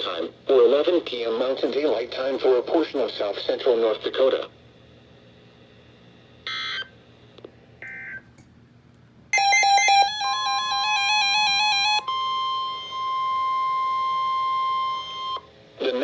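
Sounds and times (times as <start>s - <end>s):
steady warning alarm tone: 9.3s - 15.5s
electronic alert melody: 9.4s - 13.1s.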